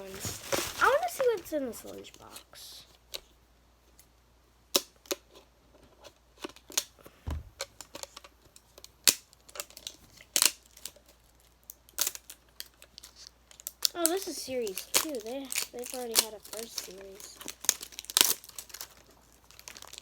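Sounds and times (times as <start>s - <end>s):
package rustling: 0.0s - 2.4s, 9.4s - 20.0s
low thud: 7.2s - 7.6s.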